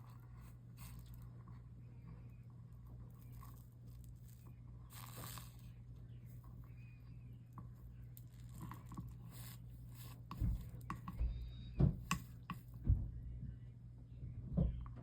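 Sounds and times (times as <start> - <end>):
steady low hum: 0.0 - 15.0
knocks and scrapes at bench: 8.4 - 12.8.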